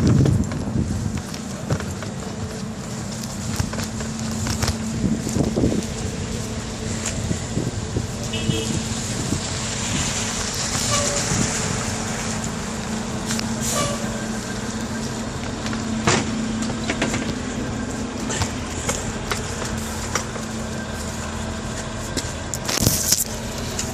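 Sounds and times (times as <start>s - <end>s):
wind noise: 0.0s - 18.0s, 22.4s - 23.5s
bicycle tyre noise on snow: 0.0s - 23.9s.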